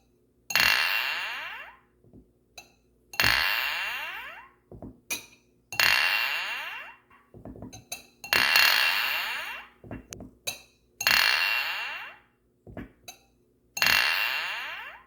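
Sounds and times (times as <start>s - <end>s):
glass clinking: 7.7s - 8.6s.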